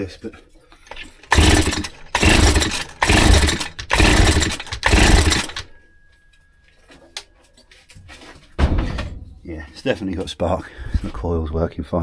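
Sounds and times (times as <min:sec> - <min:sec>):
recoil starter pulls: 0:00.9 - 0:05.7.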